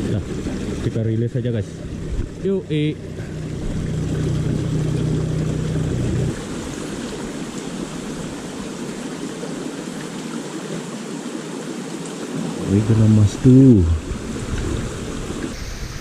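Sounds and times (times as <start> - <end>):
low steady hum: 0.0 - 8.6
river water rushing: 0.0 - 16.0.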